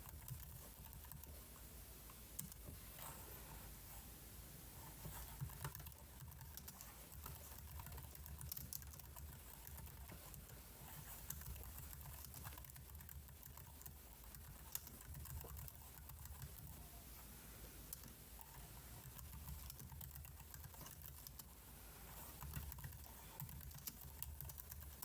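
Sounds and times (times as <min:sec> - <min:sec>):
computer keyboard clicking: 0:05.4 - 0:10.2, 0:11.3 - 0:16.8, 0:19.0 - 0:21.5, 0:22.4 - 0:25.0.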